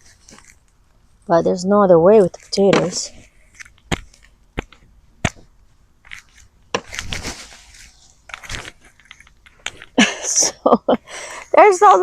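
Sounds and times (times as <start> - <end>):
scraping and rustling of earth: 0.0 - 0.7, 6.0 - 10.0.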